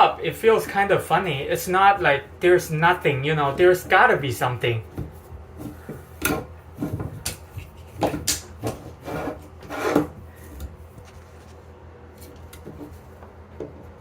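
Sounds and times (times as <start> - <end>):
brush scraping inside duct: 8.7 - 10.5.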